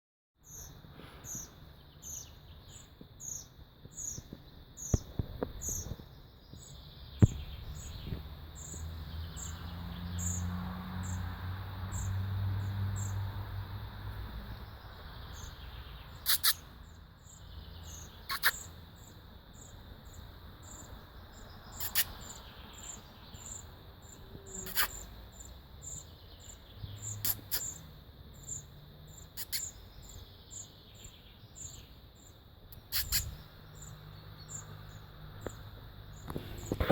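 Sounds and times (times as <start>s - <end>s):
baby birds chirping: 0.4s - 11.2s, 14.5s - 36.9s.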